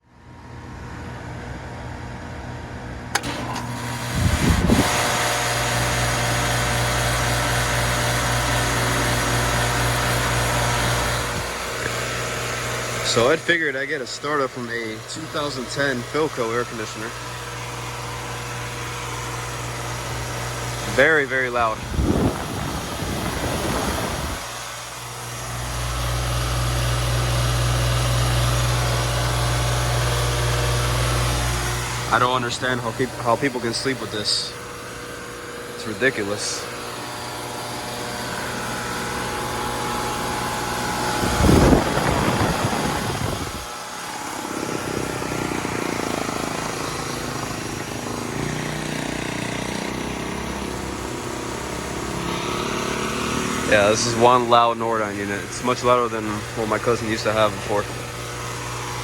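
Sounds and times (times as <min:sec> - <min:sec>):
air conditioner low rumble: 0:00.3 - 0:48.7, 0:53.7 - 0:59.0
air conditioner humming: 0:00.8 - 0:59.0
air conditioner click: 0:03.1 - 0:05.0.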